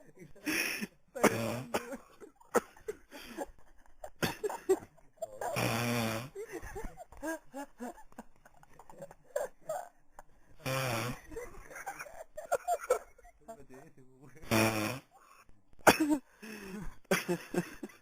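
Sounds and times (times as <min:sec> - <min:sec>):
man snoring: 0:00.5 - 0:02.0, 0:05.4 - 0:06.5, 0:10.6 - 0:11.6, 0:14.4 - 0:15.1.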